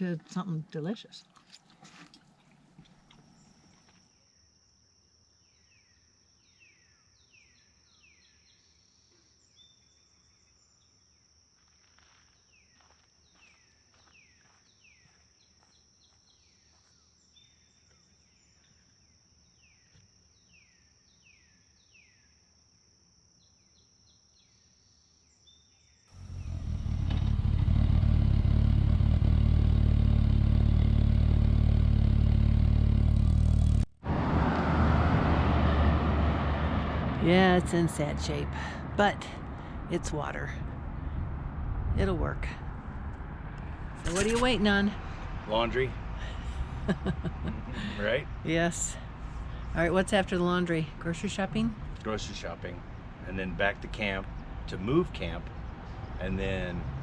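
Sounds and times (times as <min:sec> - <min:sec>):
birds chirping: 0:26.2 - 0:28.7
motorcycle engine running: 0:26.2 - 0:33.9.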